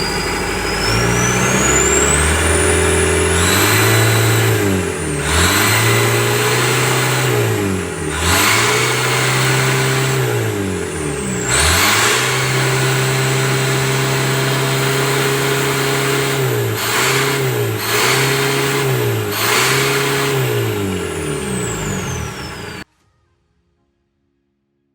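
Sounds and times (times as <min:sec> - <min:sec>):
turbo whistle: 0:00.0 - 0:04.6
diesel engine revving: 0:00.0 - 0:22.8.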